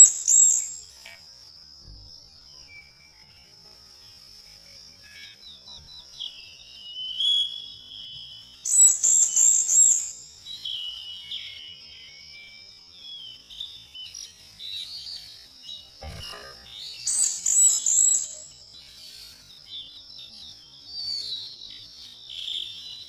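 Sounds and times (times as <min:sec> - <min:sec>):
birds singing: 0:00.0 - 0:01.1, 0:04.9 - 0:23.0
steady high-pitched drone: 0:16.0 - 0:18.7.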